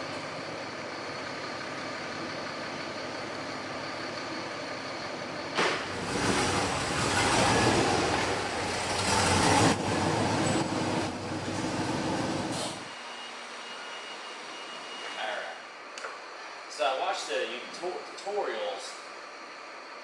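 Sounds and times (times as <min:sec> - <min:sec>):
car engine running: 0:00.0 - 0:12.9.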